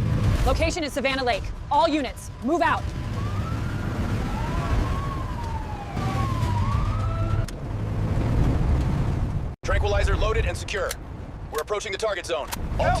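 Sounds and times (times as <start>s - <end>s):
emergency sirens wailing: 1.5s - 8.2s.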